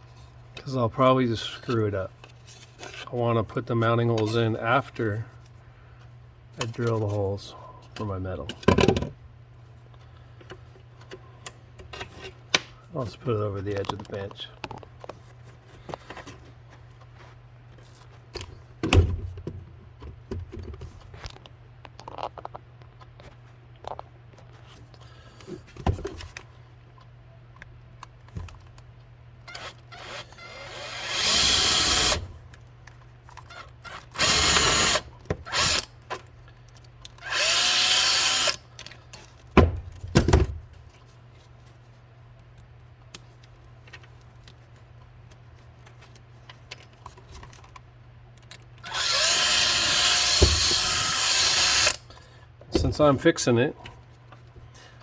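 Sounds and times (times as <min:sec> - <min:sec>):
electric drill boring metal: 0:30.0 - 0:32.2, 0:34.2 - 0:35.8, 0:37.2 - 0:38.6, 0:48.9 - 0:52.0.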